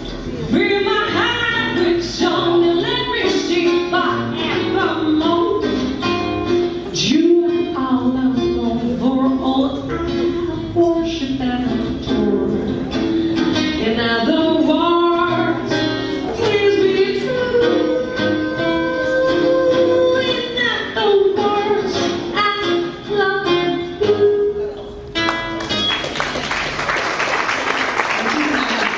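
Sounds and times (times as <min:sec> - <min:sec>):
acoustic guitar plucked: 0:00.0 - 0:26.2
woman singing: 0:00.5 - 0:06.1, 0:06.9 - 0:12.9, 0:13.7 - 0:24.7.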